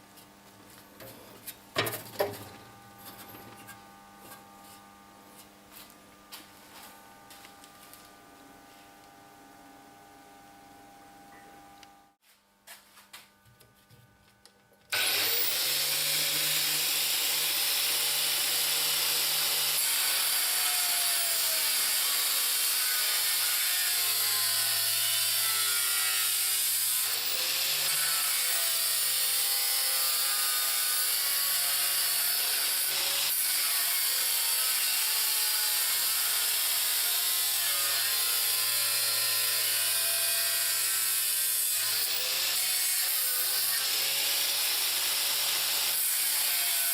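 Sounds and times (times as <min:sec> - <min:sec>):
angle grinder cutting: 0:14.9 - 0:46.9.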